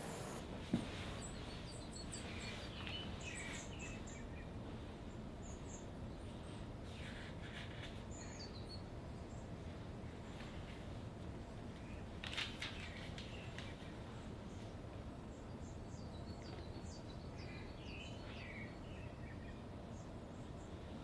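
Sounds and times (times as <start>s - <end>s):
small birds chirping: 0.0s - 0.4s, 1.0s - 9.5s.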